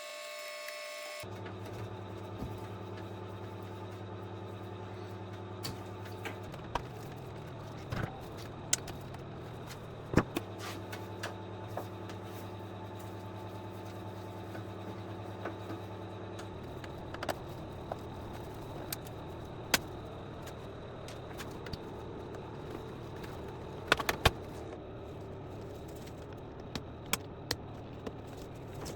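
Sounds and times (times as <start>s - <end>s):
steady low hum: 1.2s - 28.9s.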